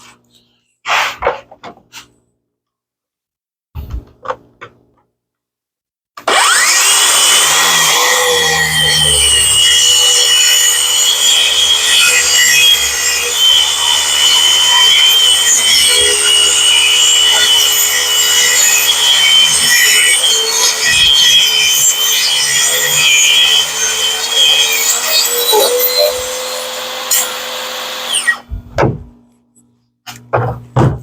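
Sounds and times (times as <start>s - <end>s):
power saw cutting wood: 6.2s - 28.5s.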